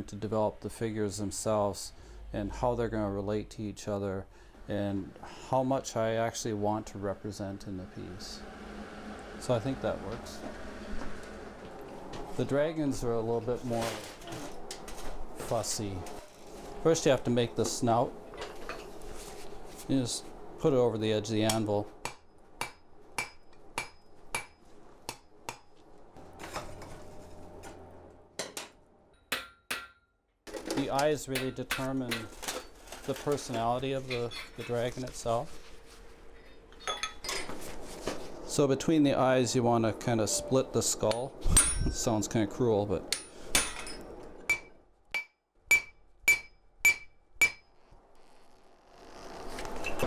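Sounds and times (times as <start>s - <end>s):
steady noise with low hum: 0.0s - 29.1s, 30.5s - 44.9s
hammer striking hot steel: 21.4s - 25.8s, 29.3s - 30.1s, 31.3s - 32.4s, 41.0s - 42.1s, 43.1s - 47.7s.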